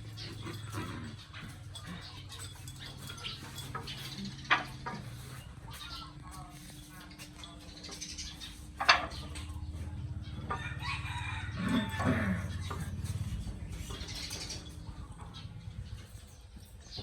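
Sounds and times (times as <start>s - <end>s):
rooster crowing: 10.5s - 12.6s.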